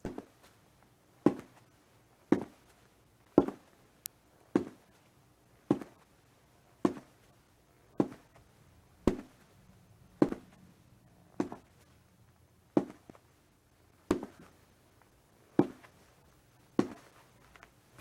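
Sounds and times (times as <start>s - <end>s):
slow footsteps: 1.3s - 1.6s, 2.3s - 2.8s, 3.4s - 3.8s, 4.6s - 4.9s, 6.8s - 13.3s, 14.0s - 18.0s.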